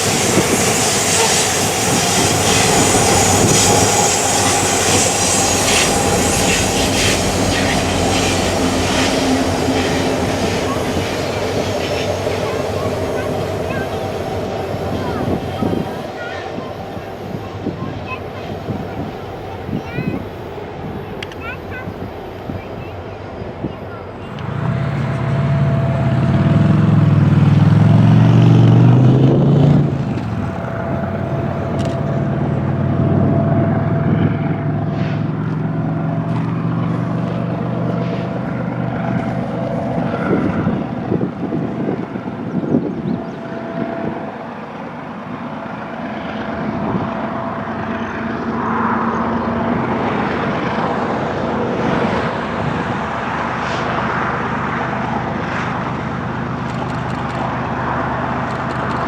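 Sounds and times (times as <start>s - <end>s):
diesel locomotive engines: 0.0s - 59.0s
train cars rumbling: 0.0s - 59.0s
train wheel clicks: 56.6s - 59.0s.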